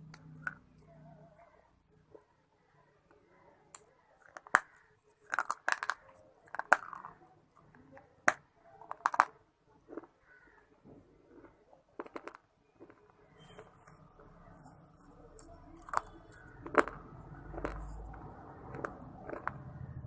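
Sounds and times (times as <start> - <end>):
chewing crunches: 3.8 - 14.0, 14.6 - 19.7.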